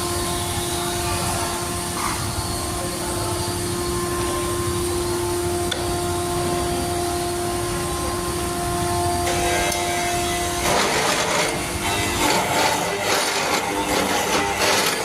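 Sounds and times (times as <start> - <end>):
power machine cutting wood: 8.2 - 15.0.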